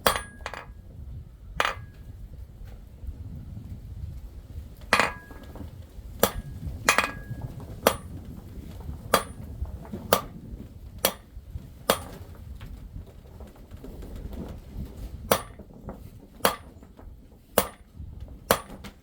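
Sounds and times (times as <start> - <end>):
hammer striking metal: 0.0 - 0.7, 1.6 - 1.9, 5.0 - 5.5, 6.2 - 8.1, 9.1 - 9.5, 11.0 - 11.3, 11.9 - 12.2, 15.3 - 15.6, 16.4 - 16.7, 17.6 - 17.8, 18.5 - 18.8.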